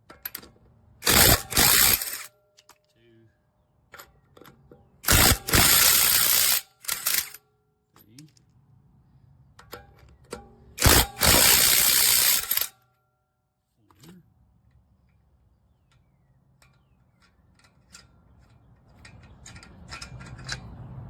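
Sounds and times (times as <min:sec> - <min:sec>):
impact wrench hammering: 0:00.0 - 0:02.3, 0:05.0 - 0:07.4, 0:10.8 - 0:12.7.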